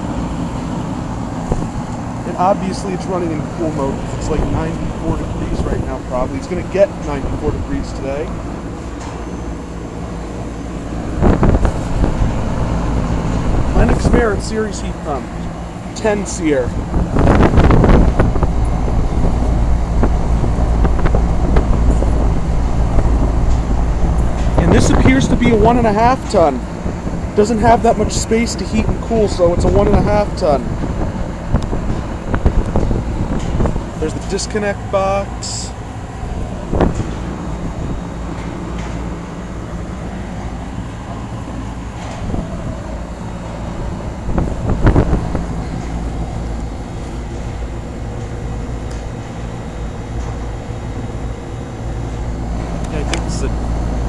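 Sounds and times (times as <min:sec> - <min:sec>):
heat pump humming: 0:00.0 - 0:54.0.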